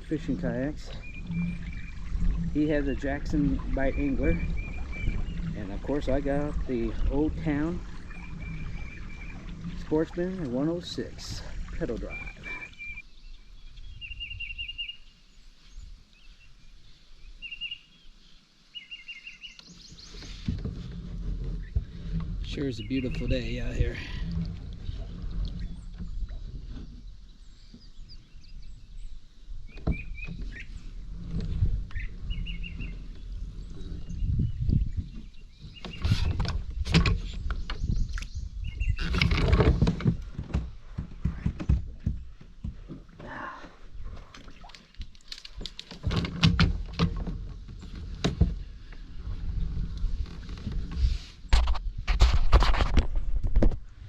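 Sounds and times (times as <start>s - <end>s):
small birds chirping: 31.9s - 36.5s, 37.4s - 39.3s
hollow knocks on plastic kayak: 39.6s - 43.3s.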